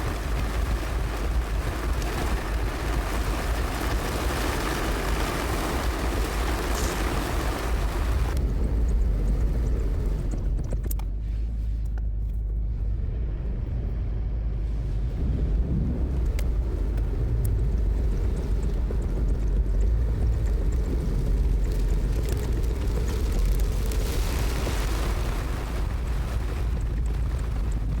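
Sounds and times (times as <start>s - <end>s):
wind hiss: 0.0s - 10.3s
moving vehicle rumble: 0.0s - 28.0s.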